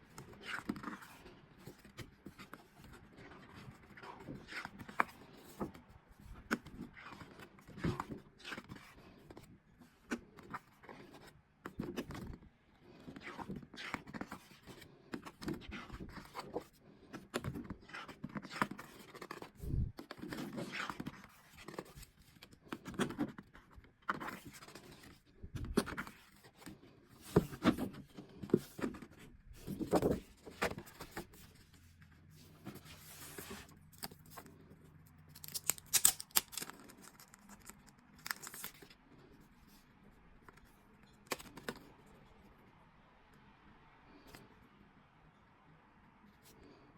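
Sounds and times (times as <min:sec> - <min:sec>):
paper and packaging rustling: 0:27.4 - 0:39.0.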